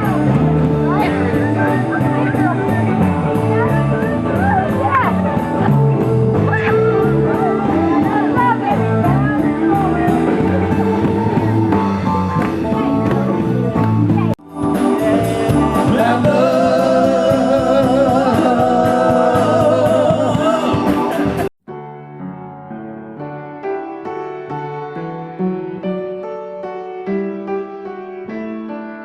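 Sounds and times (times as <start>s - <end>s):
rock band with singer: 0.0s - 21.5s
quiet piano music: 21.7s - 29.0s.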